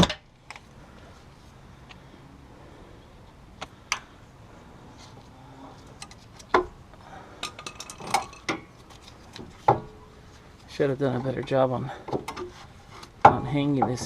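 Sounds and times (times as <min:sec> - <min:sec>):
hand tools clicking and clinking: 0:07.4 - 0:09.5.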